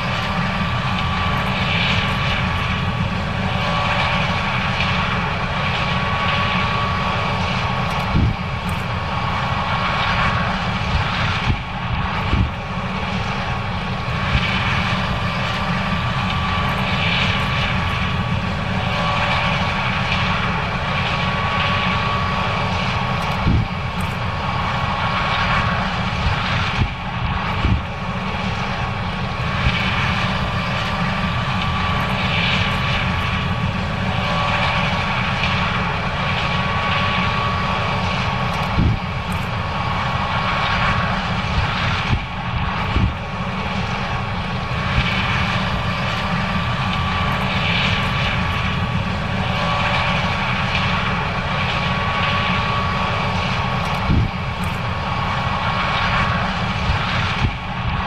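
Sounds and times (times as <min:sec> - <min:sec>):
combine harvester drone: 0:00.0 - 0:58.0
constant machine whine: 0:00.0 - 0:58.0.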